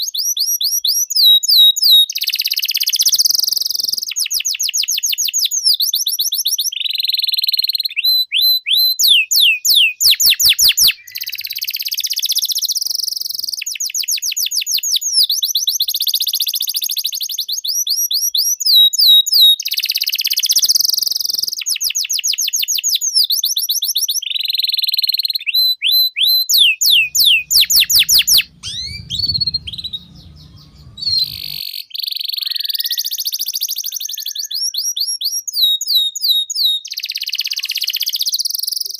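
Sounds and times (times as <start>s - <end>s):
canary singing: 26.5s - 31.6s
low hum: 26.9s - 31.6s.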